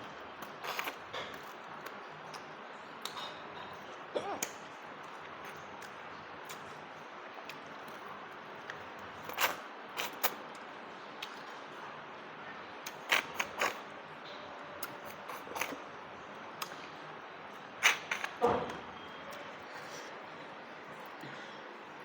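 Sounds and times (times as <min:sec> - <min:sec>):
person chewing: 0:14.8 - 0:15.8.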